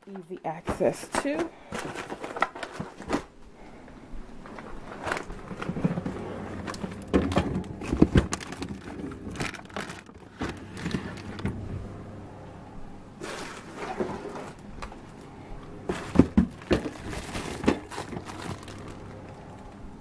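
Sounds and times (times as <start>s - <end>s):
frozen food packaging rustling: 0.6s - 11.6s, 13.2s - 20.0s
thumps of bins: 5.1s - 11.6s, 15.8s - 18.7s.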